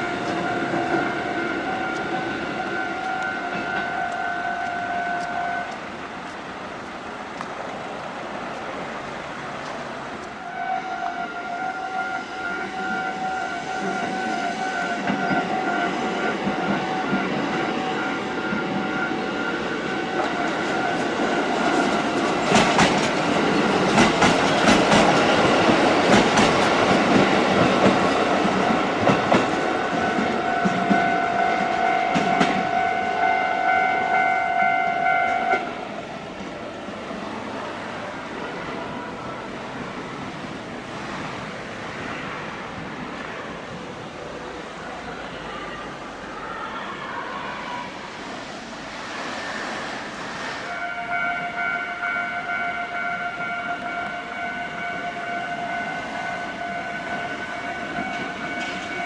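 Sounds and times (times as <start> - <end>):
train rumble: 0.0 - 59.0
wheels clacking over rail joints: 20.1 - 32.8.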